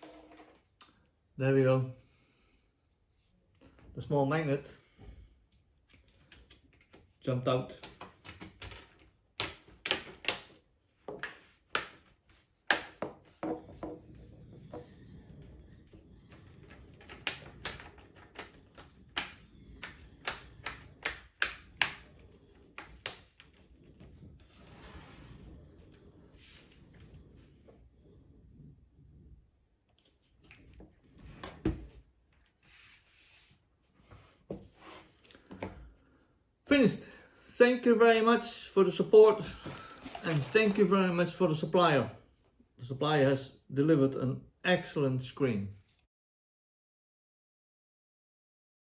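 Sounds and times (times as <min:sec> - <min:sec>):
faint rubbing on laptop: 0:23.5 - 0:29.4.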